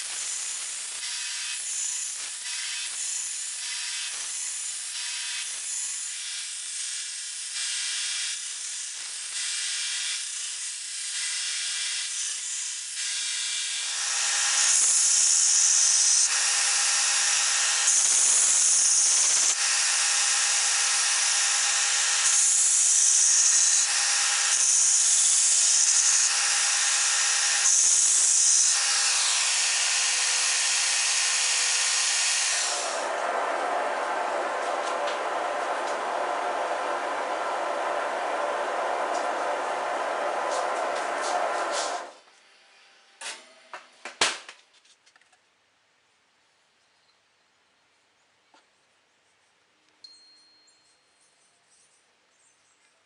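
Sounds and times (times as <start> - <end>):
electric grinder running: 0.0 - 42.2.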